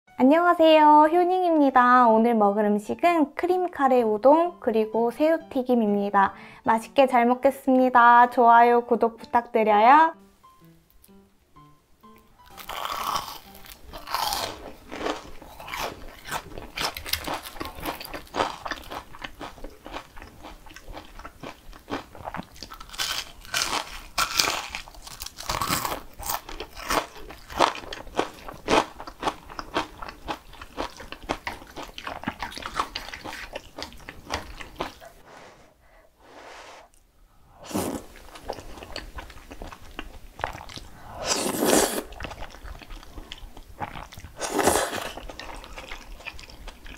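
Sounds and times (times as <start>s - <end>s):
person chewing crunchy food: 12.4s - 35.2s, 37.6s - 46.9s.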